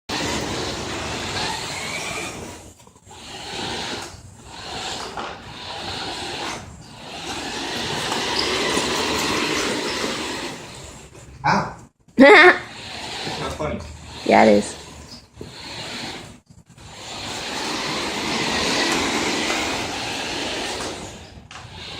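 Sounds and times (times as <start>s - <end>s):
radio-controlled car motor: 0.1s - 11.0s, 12.6s - 21.9s.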